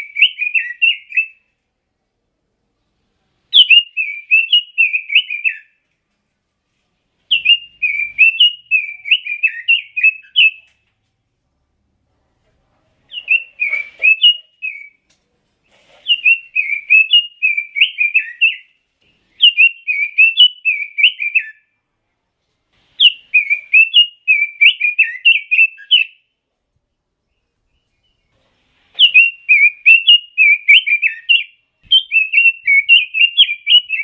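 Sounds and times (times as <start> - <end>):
bird singing whistled notes: 0.0 - 1.5, 3.5 - 5.8, 7.3 - 10.7, 13.1 - 15.0, 16.0 - 21.7, 23.0 - 26.3, 29.0 - 34.0.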